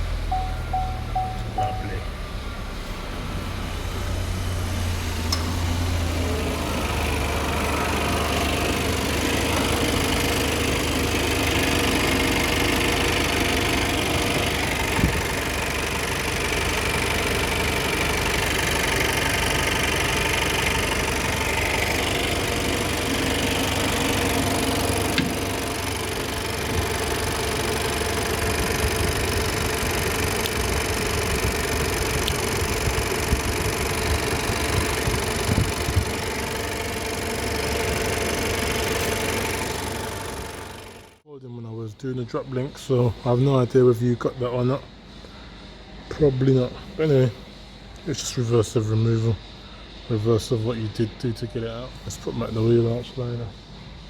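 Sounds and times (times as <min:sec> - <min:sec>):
car engine idling: 0:00.0 - 0:41.2.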